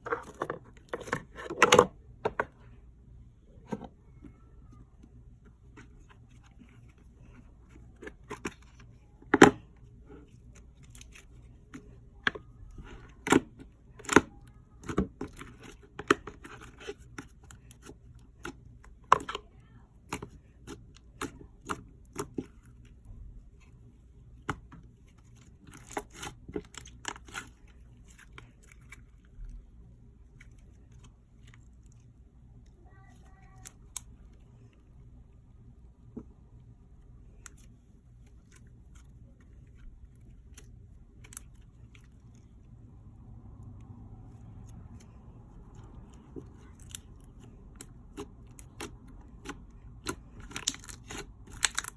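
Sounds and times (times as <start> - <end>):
slime clicking and popping: 47.8 - 51.9.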